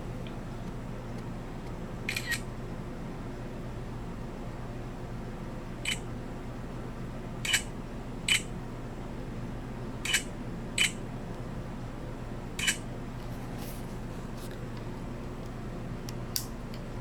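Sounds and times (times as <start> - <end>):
steady low hum: 0.0 - 17.0
camera shutter clicking: 2.1 - 2.4.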